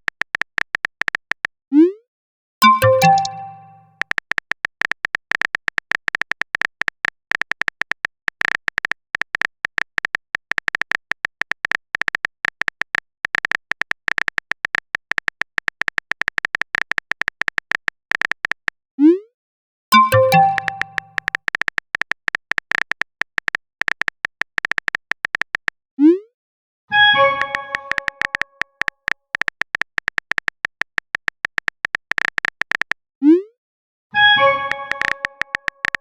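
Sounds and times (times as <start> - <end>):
bright message chime: 2.6 - 3.9, 20.0 - 21.2
phone keyboard typing clicks: 2.6 - 3.9, 19.9 - 25.8, 27.4 - 33.0, 34.7 - 36.0.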